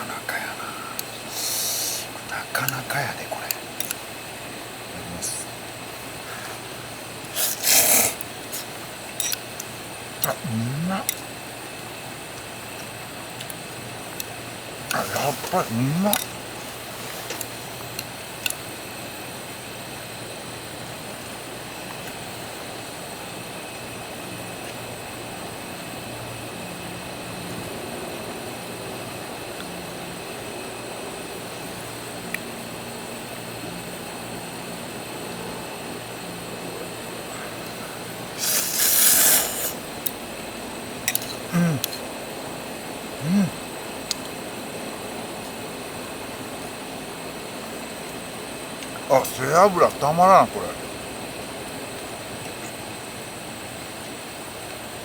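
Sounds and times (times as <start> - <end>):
steady background hiss: 0.0 - 55.0
small clicks: 3.5 - 4.0
noodle slurp: 7.3 - 8.8, 14.9 - 17.6, 38.3 - 39.9.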